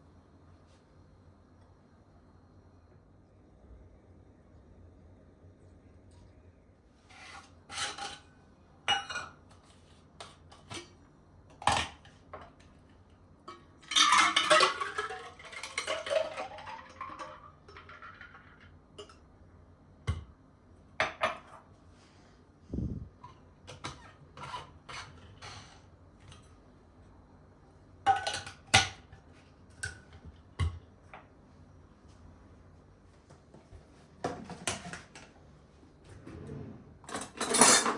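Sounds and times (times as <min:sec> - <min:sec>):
dishes and cutlery clinking: 0:08.9 - 0:10.9, 0:37.1 - 0:37.9.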